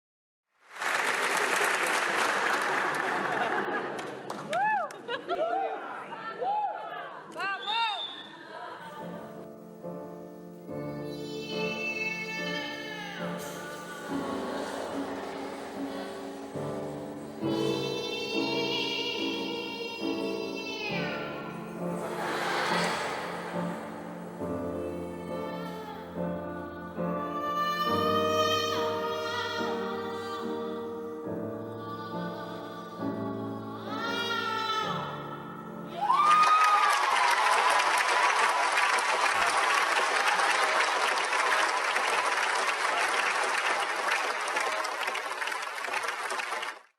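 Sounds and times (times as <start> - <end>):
applause: 0.6 - 5.2, 36.1 - 46.9
operatic singing: 10.7 - 36.1.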